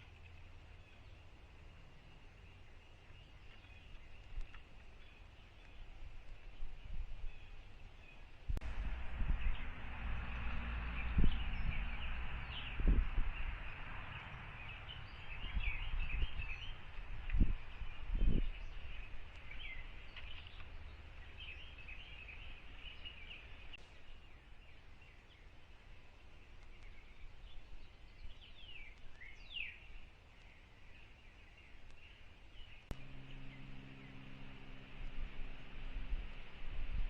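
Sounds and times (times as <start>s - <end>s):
small birds chirping: 0.0s - 37.0s
faint low hum: 32.8s - 37.0s.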